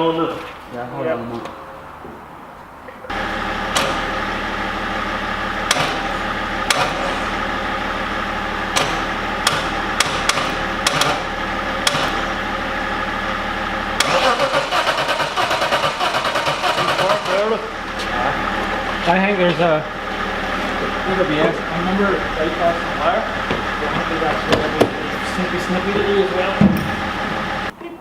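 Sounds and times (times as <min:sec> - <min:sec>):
engine cranking drone: 0:03.1 - 0:27.7
sharp clicks: 0:08.7 - 0:11.2.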